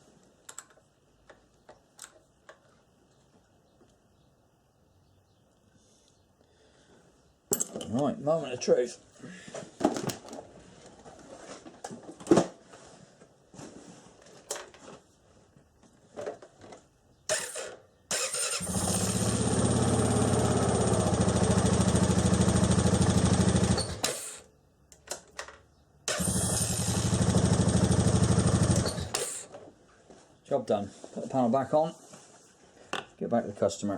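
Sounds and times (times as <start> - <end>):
quad engine running: 17.3 - 24.4, 26.1 - 29.5
starter motor cranking: 17.3 - 24.5, 26.1 - 29.6.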